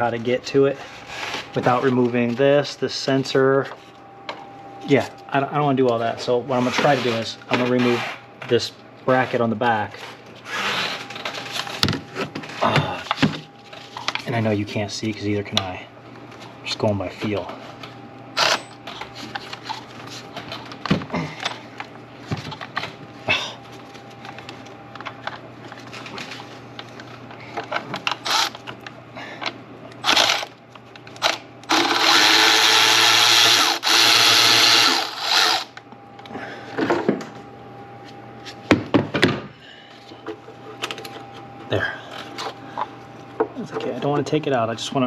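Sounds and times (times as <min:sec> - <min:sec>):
cordless power tool running: 0:28.2 - 0:28.6, 0:30.0 - 0:30.5, 0:31.2 - 0:35.8.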